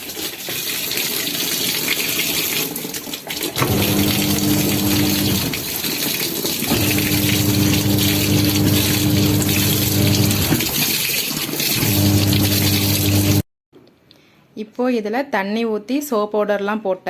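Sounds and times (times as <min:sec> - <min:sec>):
water gushing from a pipe: 0:00.0 - 0:13.4
washing machine motor humming: 0:03.5 - 0:13.4.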